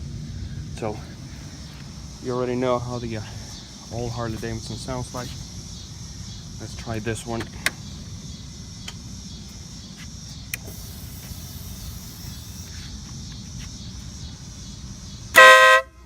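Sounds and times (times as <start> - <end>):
motorcycle low rumble: 0.0 - 15.4
loud air horn blast: 15.3 - 16.0.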